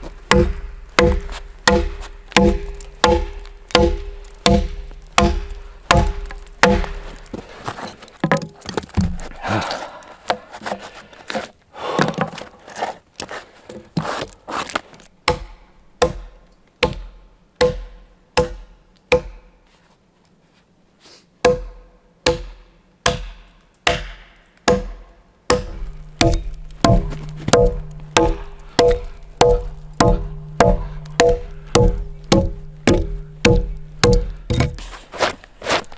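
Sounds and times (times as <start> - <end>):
axe chopping into a log: 0.0 - 7.4, 23.1 - 35.9.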